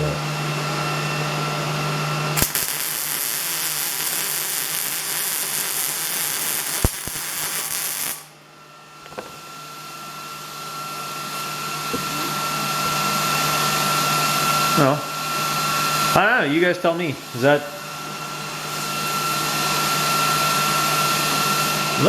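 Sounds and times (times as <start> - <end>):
welding arc hissing: 2.4 - 8.4.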